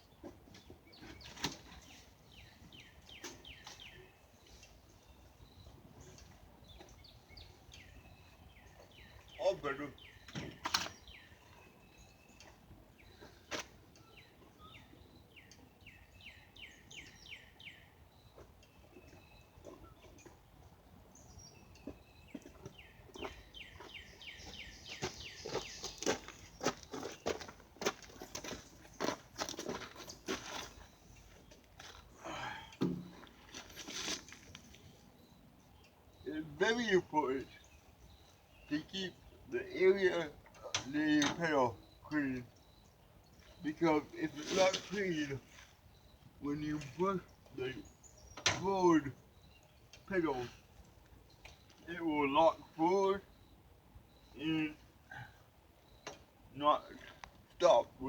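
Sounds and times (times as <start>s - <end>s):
songbird singing: 0.0s - 58.0s
faint bird chirps: 21.2s - 27.5s, 34.5s - 57.8s.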